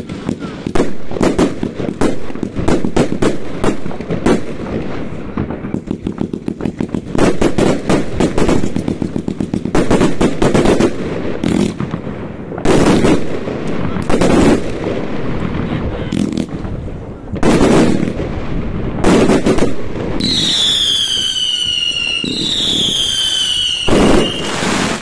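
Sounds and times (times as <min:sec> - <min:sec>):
fireworks bangs and crackling: 0:00.0 - 0:25.0.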